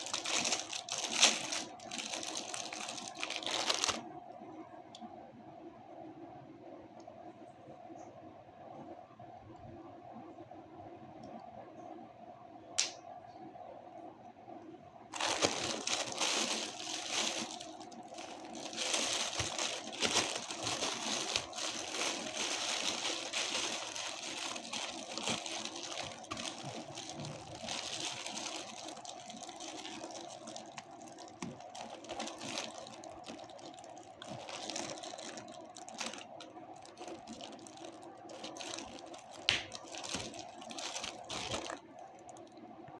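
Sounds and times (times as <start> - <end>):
plastic packaging crinkling: 0.0 - 4.1, 15.1 - 42.6
faint steady hum: 0.0 - 43.0.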